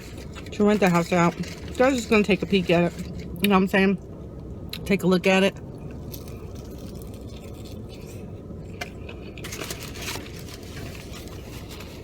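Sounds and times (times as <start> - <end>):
car low hum: 0.0 - 12.0
chewing crunchy fried chicken: 5.6 - 12.0.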